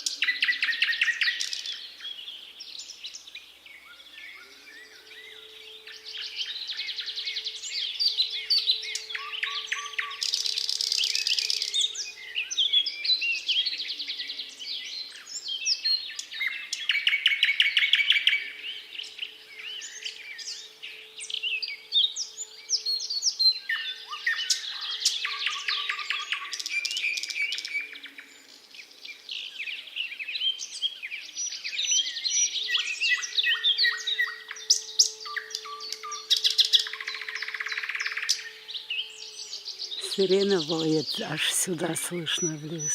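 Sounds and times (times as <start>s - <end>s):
nightingale singing: 31.5s - 42.9s.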